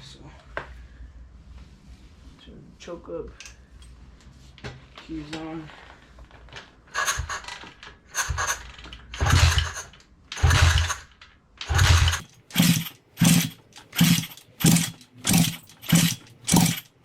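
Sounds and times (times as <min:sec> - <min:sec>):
motorbike engine cranking: 0:06.9 - 0:17.0.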